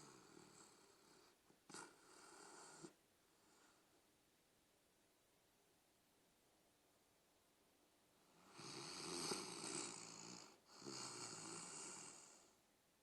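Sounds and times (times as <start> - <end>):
person snoring: 8.4 - 12.6.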